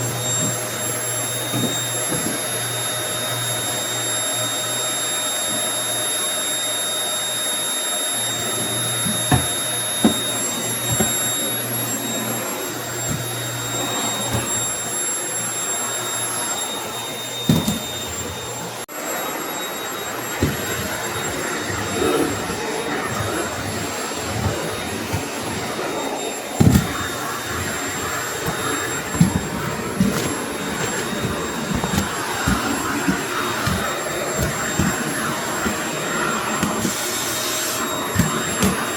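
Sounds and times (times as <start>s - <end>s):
vacuum cleaner motor whine: 0.0s - 38.9s.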